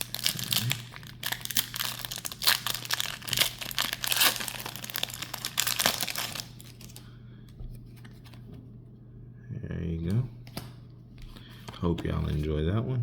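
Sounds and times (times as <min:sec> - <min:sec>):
foil wrapper crinkling and tearing: 0:00.0 - 0:07.0.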